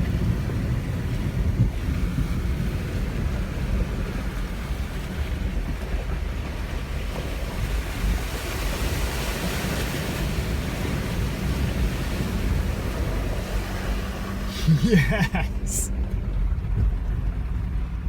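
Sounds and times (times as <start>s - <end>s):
water rushing and sloshing: 0.0s - 18.0s
engine rumbling low: 9.6s - 18.0s.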